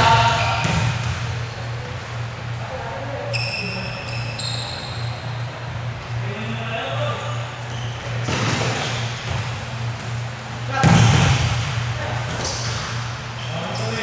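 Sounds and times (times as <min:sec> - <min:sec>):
basketball shoes squeaking: 0:00.0 - 0:01.4, 0:03.3 - 0:05.6, 0:07.6 - 0:10.2.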